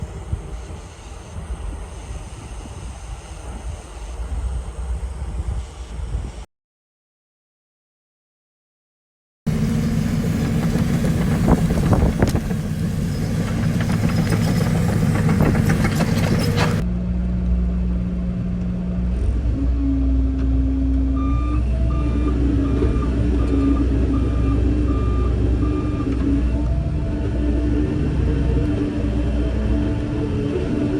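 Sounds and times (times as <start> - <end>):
diesel engines under load: 9.5 - 16.8, 18.4 - 30.9
metallic clanks: 10.0 - 16.8
back-up alarm beeping: 21.2 - 26.6.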